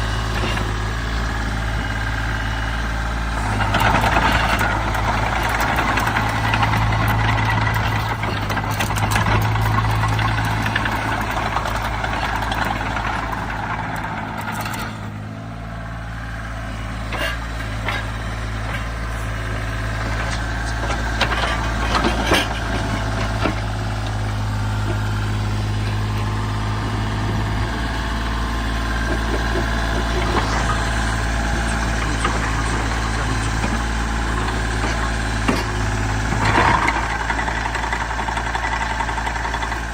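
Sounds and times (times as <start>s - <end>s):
diesel engine running: 0.0s - 39.9s
sharp clicks and knocks: 29.0s - 31.0s.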